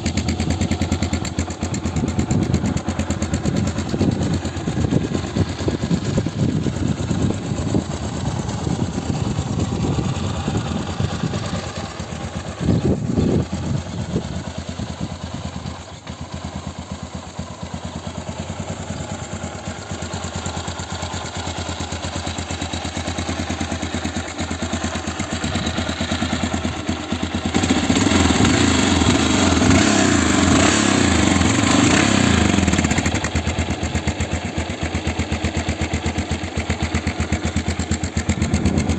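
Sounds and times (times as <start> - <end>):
motorcycle engine idling and revving: 0.0 - 38.9.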